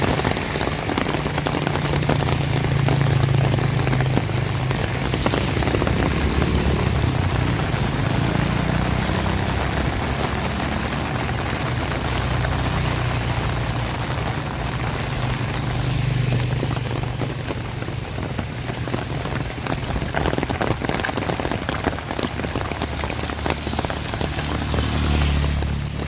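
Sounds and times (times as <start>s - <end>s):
heavy rain falling: 0.0s - 26.0s.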